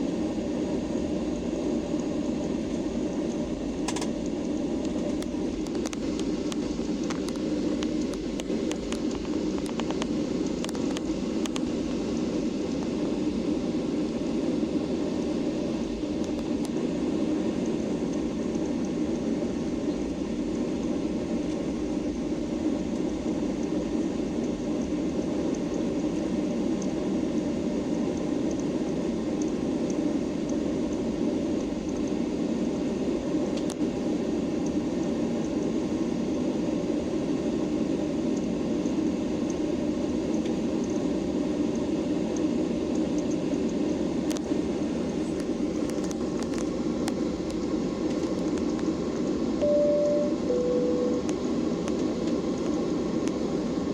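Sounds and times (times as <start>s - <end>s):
jet engine cabin hum: 0.0s - 53.9s
faint high whine: 49.5s - 52.0s.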